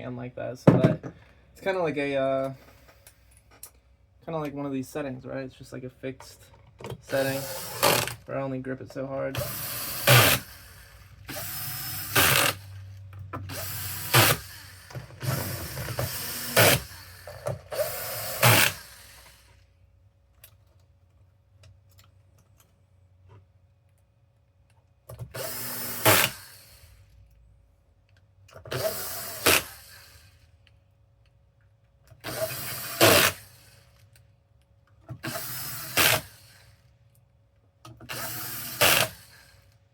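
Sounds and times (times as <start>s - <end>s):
electric screwdriver driving screws: 7.1s - 8.2s, 9.4s - 12.6s, 13.4s - 19.4s, 25.3s - 26.8s, 28.7s - 30.3s, 32.2s - 33.9s, 35.2s - 36.7s, 38.0s - 39.7s.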